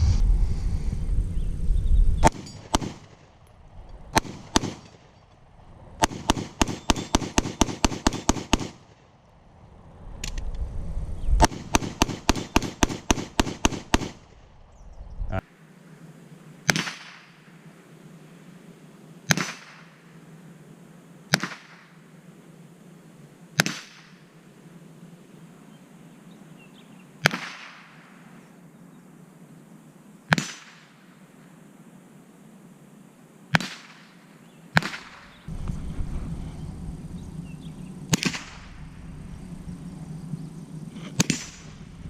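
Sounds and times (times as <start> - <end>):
semi-automatic gunfire: 2.2 - 3.2, 4.1 - 4.9, 6.0 - 8.8, 11.4 - 14.2, 34.8 - 35.5, 38.1 - 39.1, 41.1 - 41.9.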